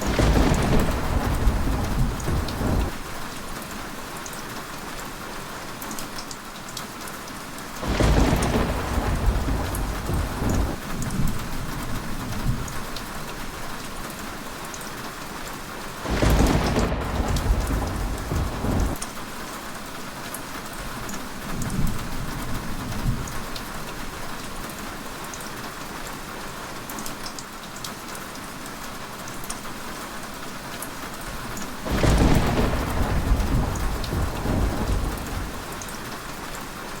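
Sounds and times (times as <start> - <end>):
thunder rumbling: 0.0 - 3.6, 7.8 - 13.8, 16.0 - 19.0, 21.4 - 24.0, 31.8 - 36.3
heavy rain falling: 0.0 - 37.0.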